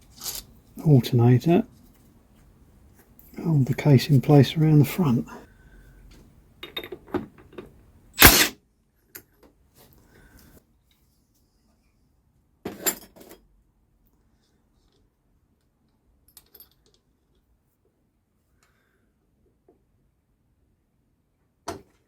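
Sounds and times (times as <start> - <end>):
metal parts clattering on workbench: 12.7 - 13.4.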